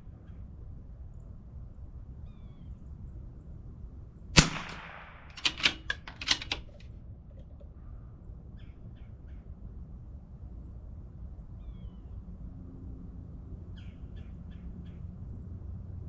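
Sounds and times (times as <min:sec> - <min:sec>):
rifle shot: 0:04.4 - 0:06.8
rifle bolt metallic clicks: 0:04.4 - 0:07.6.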